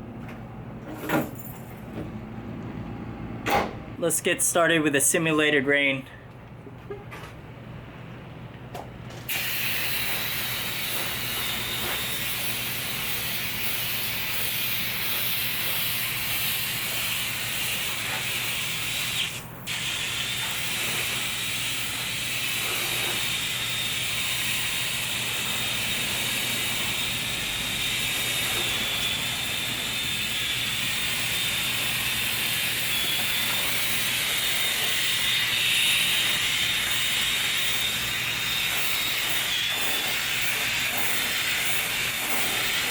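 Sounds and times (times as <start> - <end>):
water spray hissing: 9.3 - 42.9.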